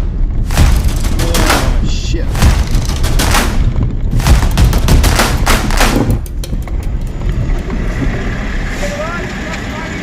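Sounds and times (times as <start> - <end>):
sharp cracks: 0.0 - 7.2
truck engine rumble: 0.0 - 10.0.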